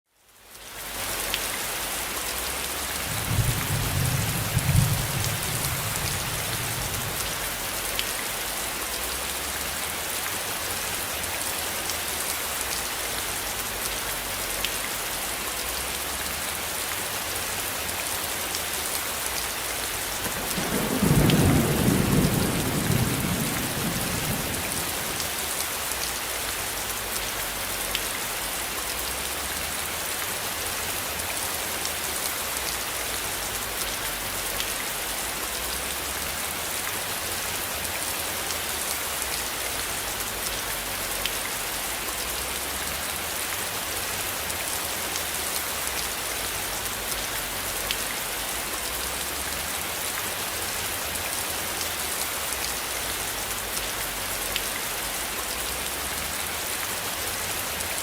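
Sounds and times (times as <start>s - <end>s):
steady rain falling: 0.1s - 58.0s
distant thunder rumbles: 3.0s - 7.6s, 20.2s - 25.4s.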